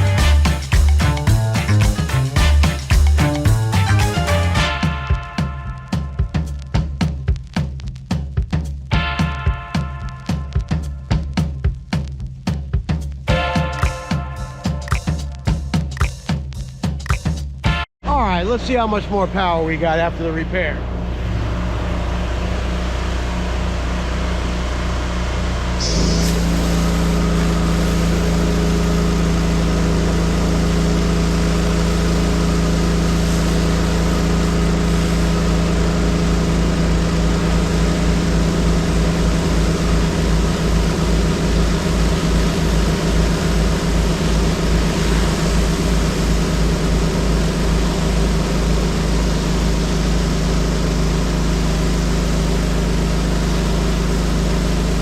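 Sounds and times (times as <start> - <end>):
pressure washer engine and pump: 18.4 - 55.0
high-pressure water spray hissing: 25.8 - 52.5.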